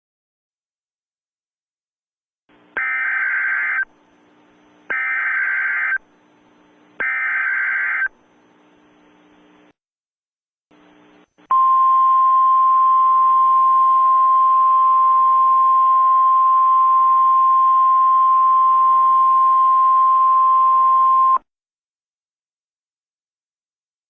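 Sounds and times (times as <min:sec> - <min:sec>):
radio-like hiss: 0:02.6 - 0:09.7, 0:10.7 - 0:11.5.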